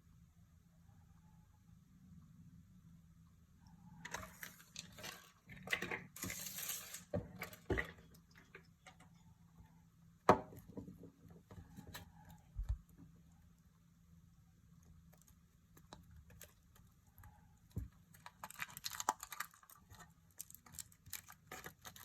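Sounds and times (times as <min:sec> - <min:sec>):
foil and plastic wrapping crinkling: 0:04.1 - 0:07.8, 0:17.8 - 0:22.0.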